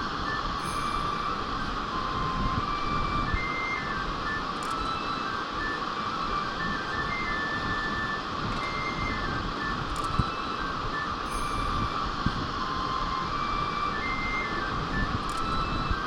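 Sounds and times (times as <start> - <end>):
mountain stream rushing: 0.0 - 16.0
faint clicks: 4.5 - 5.8, 9.9 - 10.3, 15.2 - 15.6.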